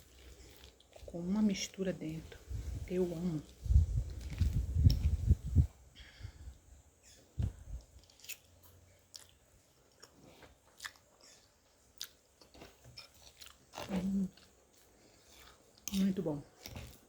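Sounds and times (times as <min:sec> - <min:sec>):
person chewing food: 0:00.0 - 0:01.2, 0:07.8 - 0:17.0.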